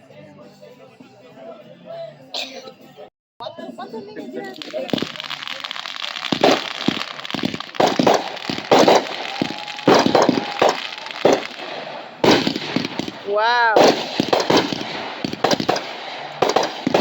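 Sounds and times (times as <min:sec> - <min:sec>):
fireworks crackling: 0:04.2 - 0:17.0
fireworks exploding: 0:04.4 - 0:17.0.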